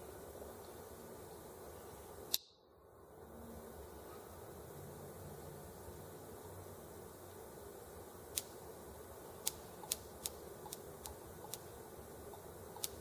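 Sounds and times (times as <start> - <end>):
ignition spark snapping: 2.3 - 2.6, 8.3 - 8.6, 9.3 - 11.7, 12.3 - 13.0.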